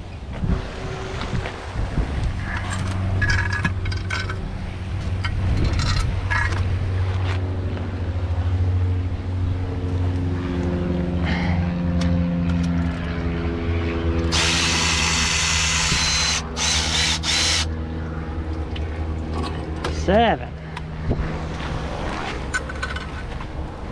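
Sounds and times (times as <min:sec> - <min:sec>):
low hum: 0:00.1 - 0:23.9
loud hissing whir: 0:14.2 - 0:17.8
power tool running in bursts: 0:14.3 - 0:17.7.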